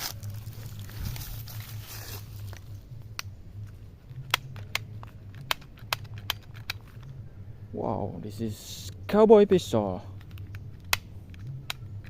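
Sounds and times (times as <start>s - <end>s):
rustling and handling noise: 0.0s - 7.2s
plastic toys clicking: 4.2s - 7.1s.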